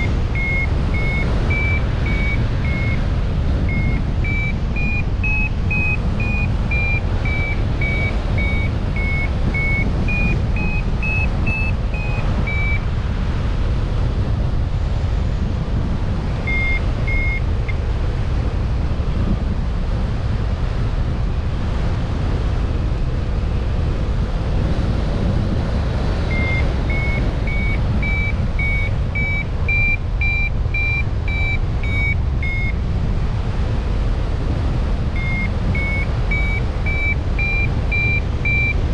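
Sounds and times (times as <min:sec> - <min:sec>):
short electronic beeps: 0:00.0 - 0:12.9, 0:16.4 - 0:17.8, 0:26.3 - 0:32.8, 0:35.1 - 0:38.8
wind noise rumble: 0:00.0 - 0:38.9.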